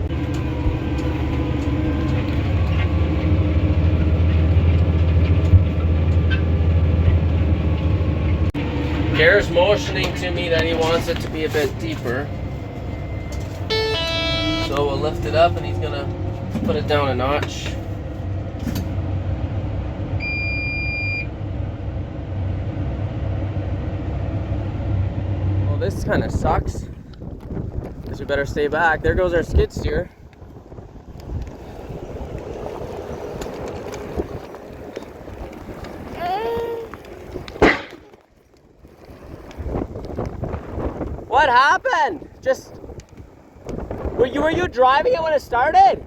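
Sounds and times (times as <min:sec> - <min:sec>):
tractor engine under load: 0:00.0 - 0:41.2
electronic beep: 0:20.2 - 0:21.3.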